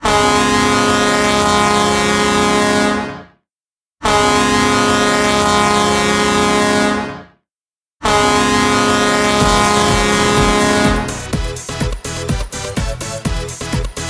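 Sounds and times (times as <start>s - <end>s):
hockey goal horn blasts: 0.0s - 1.8s, 8.0s - 11.4s.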